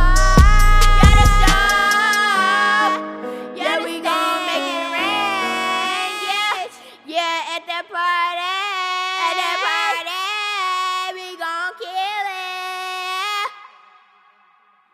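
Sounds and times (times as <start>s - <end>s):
high-pitched voice singing: 0.0s - 3.0s, 3.6s - 13.9s
echo: 0.0s - 7.2s.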